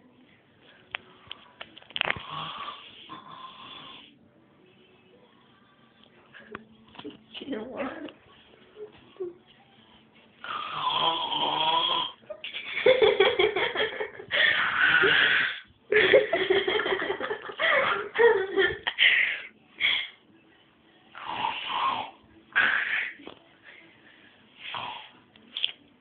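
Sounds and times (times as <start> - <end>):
person snoring: 2.1 - 4.2, 10.4 - 12.2, 14.4 - 15.7, 21.1 - 23.2, 24.6 - 25.2
stifled giggling: 12.2 - 19.5.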